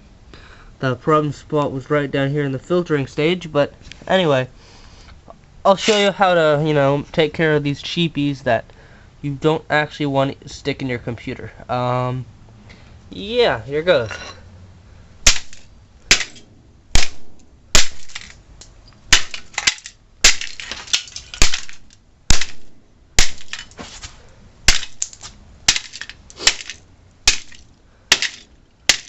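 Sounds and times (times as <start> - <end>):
heavy blows smashing: 15.2 - 18.4, 19.1 - 29.0
crunching and rattling: 15.2 - 29.0.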